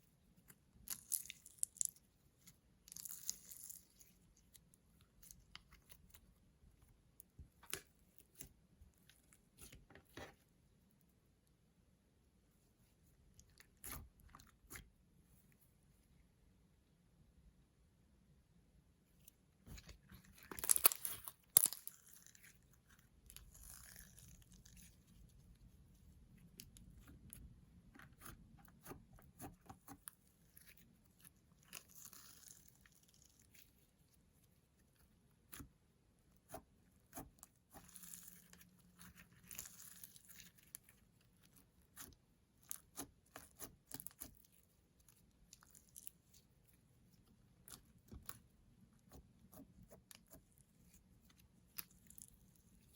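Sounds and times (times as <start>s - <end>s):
slime squishing and popping: 20.4s - 22.5s.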